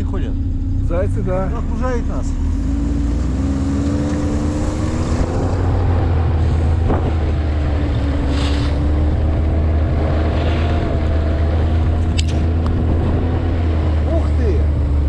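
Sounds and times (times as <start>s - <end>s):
vehicle engine droning: 0.0s - 15.0s
wind noise on microphone: 3.8s - 13.9s.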